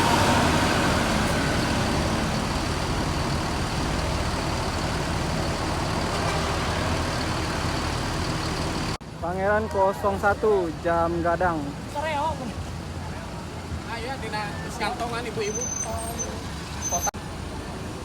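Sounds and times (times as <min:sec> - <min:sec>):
bus engine rumbling: 0:00.0 - 0:18.0.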